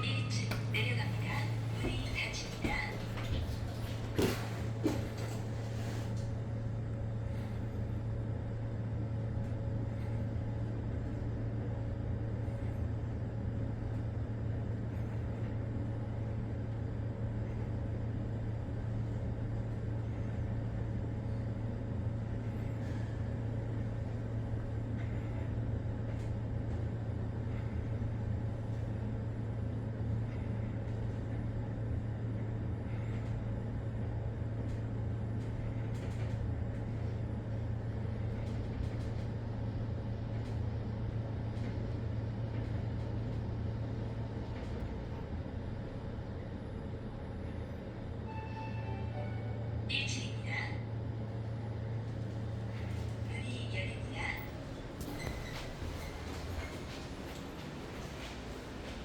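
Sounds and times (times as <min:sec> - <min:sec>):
elevator hum and rushing: 0:00.0 - 0:59.0.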